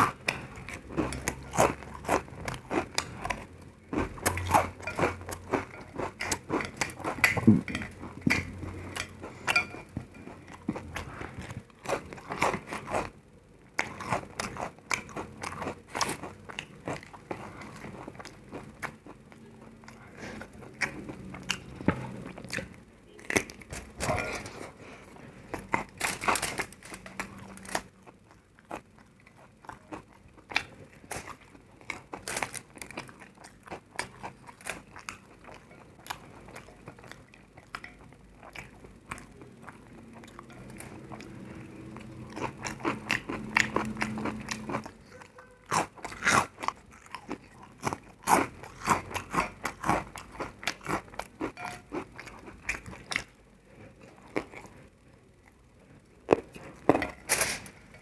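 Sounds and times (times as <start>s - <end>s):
crunching of crisp food: 0.0s - 58.0s.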